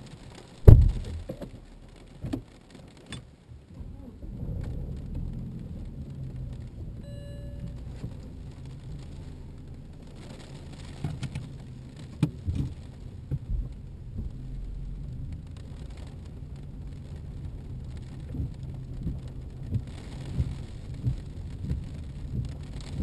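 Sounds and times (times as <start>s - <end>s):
car engine and road drone: 0.0s - 23.0s
car knocks and rattles: 0.6s - 3.2s, 11.0s - 14.4s, 18.3s - 23.0s.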